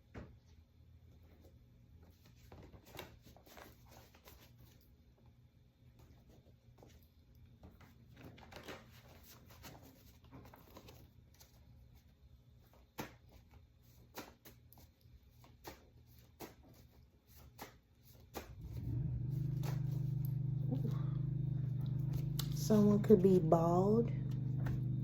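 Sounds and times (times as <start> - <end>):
cards clicking and tapping: 12.8 - 18.6
steady low hum: 18.5 - 25.0.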